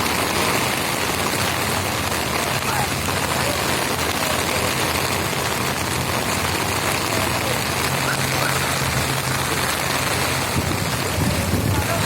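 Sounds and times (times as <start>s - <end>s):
heavy rain falling: 0.0s - 12.0s.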